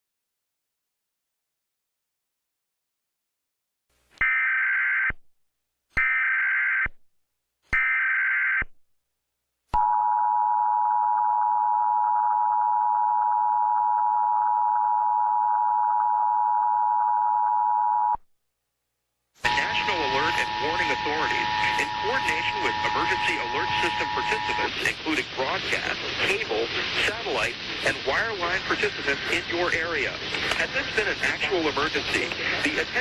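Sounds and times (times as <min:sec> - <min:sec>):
two-tone alert alarm: 0:19.5 - 0:24.7
digital data tone bursts: 0:19.5 - 0:25.6.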